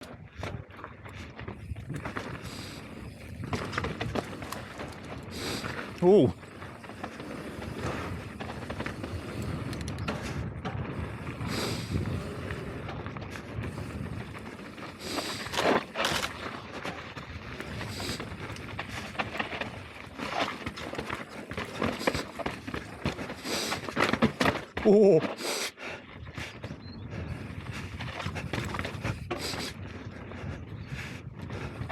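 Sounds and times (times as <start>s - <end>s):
bike rattling over bumps: 0.0s - 31.9s
tyres rumbling on dirt: 0.4s - 30.3s.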